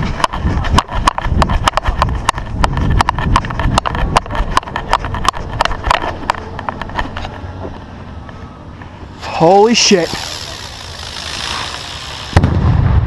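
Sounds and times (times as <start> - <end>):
fireworks cracking: 9.2 - 13.0.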